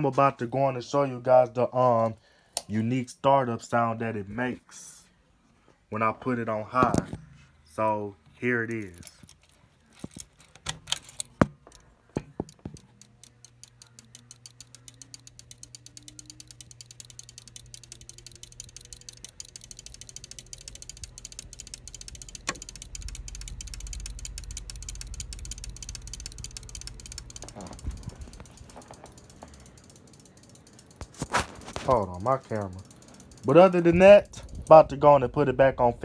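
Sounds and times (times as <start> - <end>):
ceiling fan motor hum: 6.9 - 36.0
rhythmic ticking: 8.6 - 36.0
fan switch clicks: 10.0 - 35.7.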